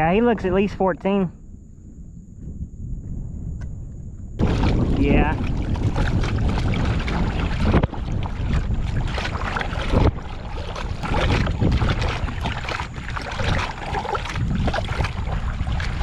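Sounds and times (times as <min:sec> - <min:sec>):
wind buffeting microphone: 0:00.0 - 0:16.0
water splashing: 0:04.4 - 0:16.0.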